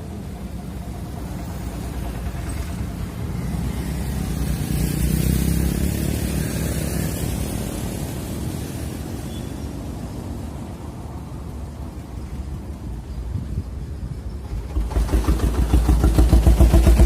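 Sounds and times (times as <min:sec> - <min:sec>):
motor vehicle passing: 0:00.0 - 0:12.9, 0:13.5 - 0:17.0.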